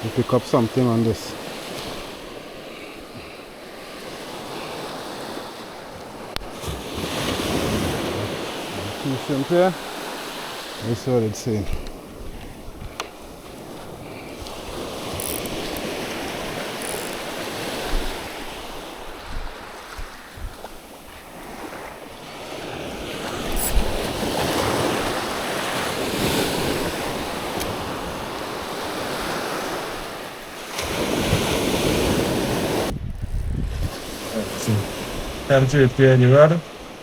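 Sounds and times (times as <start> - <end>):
sea waves washing in: 0.0 - 33.0, 33.6 - 37.0
wind buffeting microphone: 11.4 - 22.0, 31.1 - 35.5.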